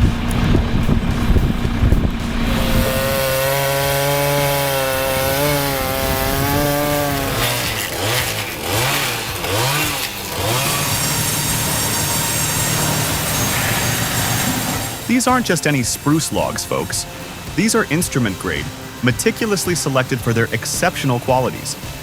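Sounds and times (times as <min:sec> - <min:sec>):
chainsaw engine revving: 0:00.0 - 0:22.0.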